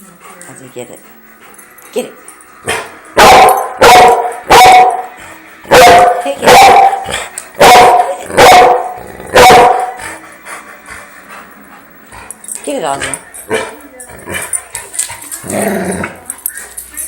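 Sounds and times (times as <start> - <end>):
dog barking loudly: 2.7 - 5.1, 5.7 - 10.0.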